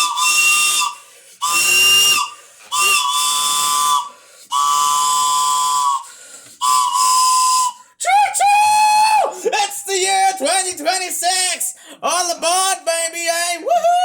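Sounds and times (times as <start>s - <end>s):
mouth-blown train whistle: 0.0s - 7.9s.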